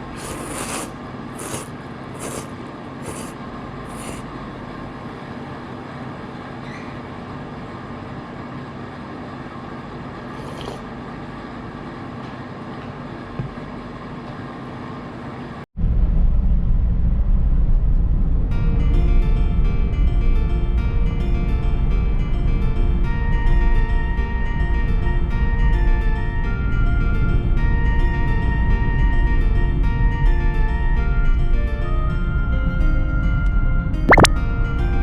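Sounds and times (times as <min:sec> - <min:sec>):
short hisses: 0:00.0 - 0:04.3.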